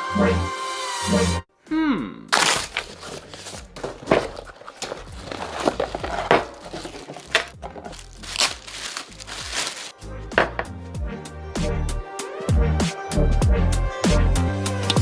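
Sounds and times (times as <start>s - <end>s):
packaging crinkling: 2.3s - 9.9s.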